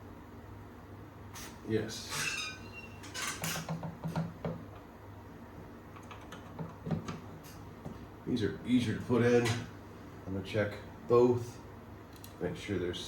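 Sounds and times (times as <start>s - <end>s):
light clicks and taps of parts: 12.1s - 12.4s.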